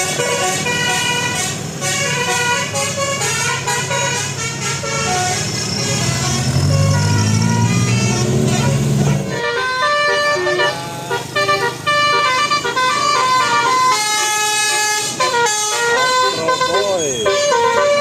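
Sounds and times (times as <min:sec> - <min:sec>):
musical vehicle horn: 0:00.0 - 0:18.0.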